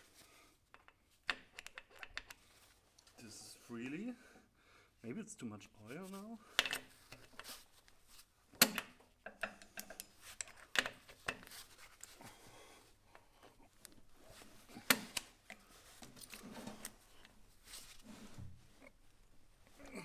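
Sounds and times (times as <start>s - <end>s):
metallic clicks and knocks: 0.7s - 2.4s, 8.6s - 12.2s
rubbing and scraping: 10.1s - 19.8s.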